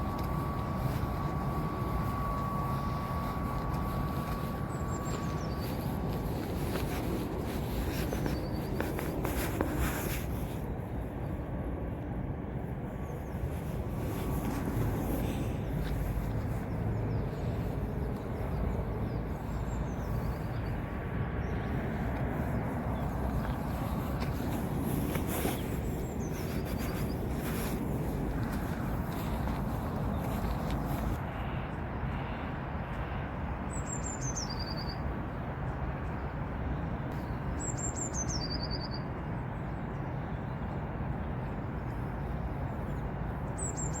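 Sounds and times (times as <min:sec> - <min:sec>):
low outdoor rumble: 0:00.0 - 0:44.0
steady background noise: 0:00.0 - 0:44.0.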